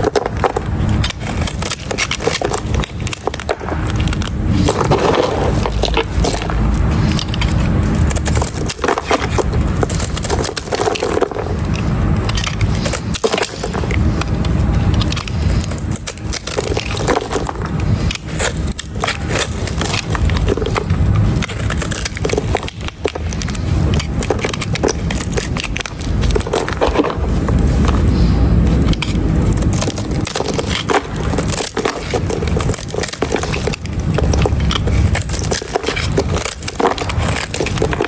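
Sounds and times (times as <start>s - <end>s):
dry soap scraping and crackling: 0.0s - 38.0s.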